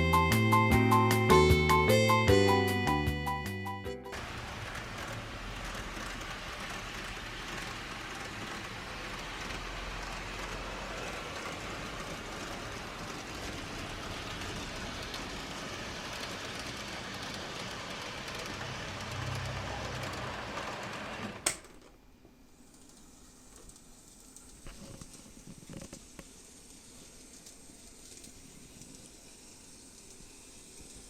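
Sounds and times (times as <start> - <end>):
train rolling along rails: 4.1 - 21.6, 22.7 - 31.0.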